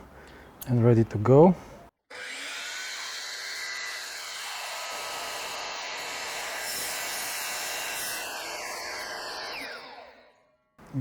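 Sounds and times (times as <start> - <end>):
miter saw motor whining: 2.1 - 10.7.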